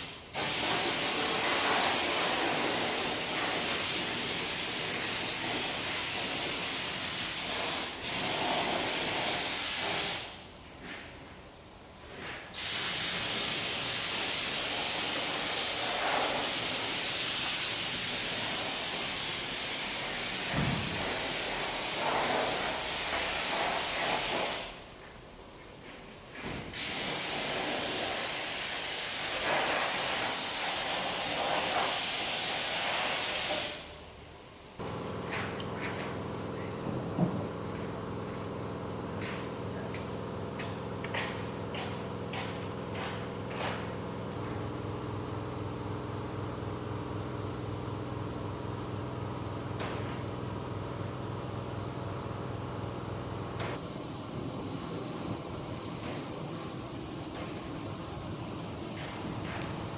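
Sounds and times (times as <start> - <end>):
high-pressure spraying hiss: 0.0 - 10.4, 12.6 - 24.8, 26.8 - 34.0.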